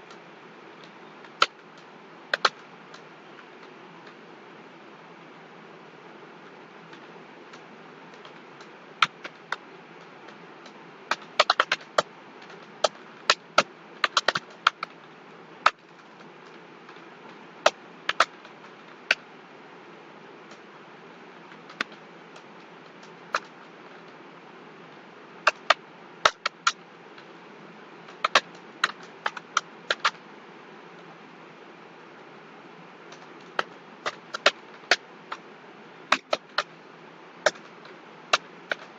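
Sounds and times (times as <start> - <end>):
background hiss: 0.0 - 38.9
computer keyboard typing: 2.3 - 3.0, 6.9 - 15.0.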